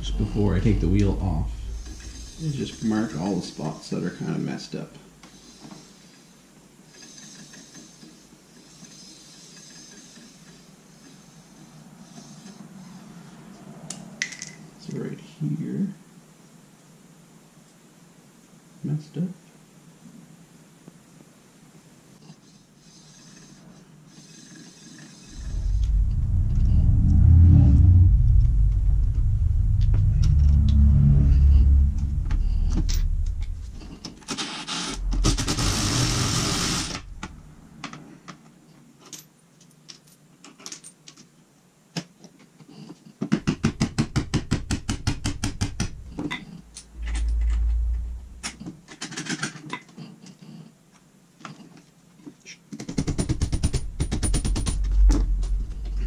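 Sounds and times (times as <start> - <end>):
long low running sound: 0.0 - 3.5, 25.3 - 37.8, 45.3 - 48.6, 54.7 - 56.0
power tool rattling: 1.0 - 3.4, 33.8 - 37.3.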